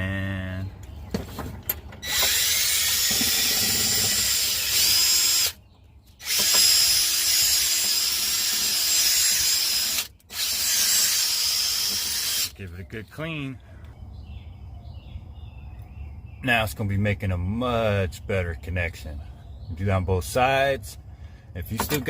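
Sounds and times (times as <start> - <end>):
drill spinning wire brush: 2.0 - 5.6, 6.2 - 12.6.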